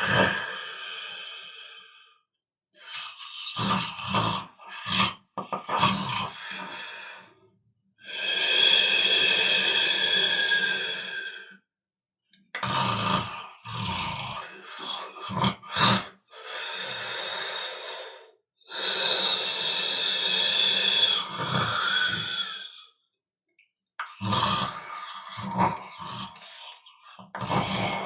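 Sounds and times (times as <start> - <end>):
people snoring: 18.8 - 22.8, 27.3 - 28.0.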